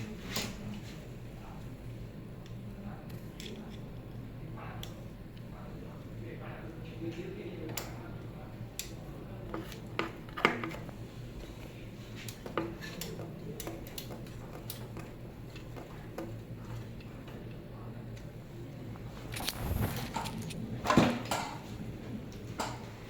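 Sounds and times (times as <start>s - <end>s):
steady low hum: 15.2s - 23.0s.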